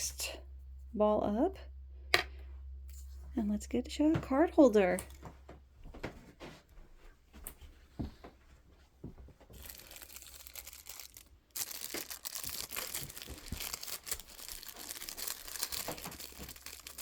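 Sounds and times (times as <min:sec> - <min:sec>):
plastic wrapping crinkling: 0:09.3 - 0:17.0.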